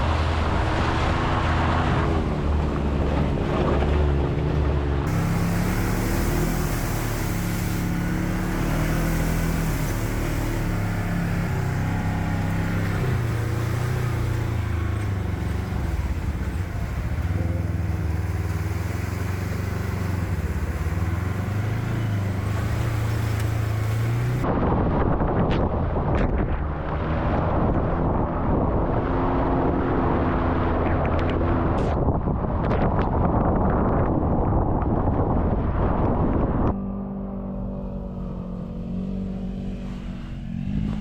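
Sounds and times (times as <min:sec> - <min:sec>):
vehicle engine running: 0:00.0 - 0:24.9
rough rushing noise: 0:00.0 - 0:29.7.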